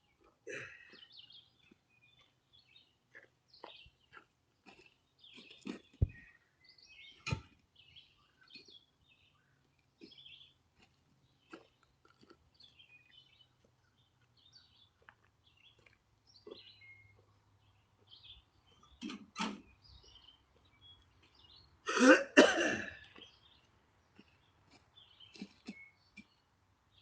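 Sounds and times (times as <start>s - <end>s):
person coughing: 0.5s - 1.0s, 21.9s - 23.0s.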